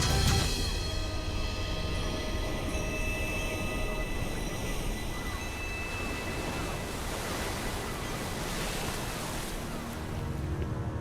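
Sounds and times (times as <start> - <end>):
sea waves: 0.0 - 11.0
wind: 0.0 - 11.0.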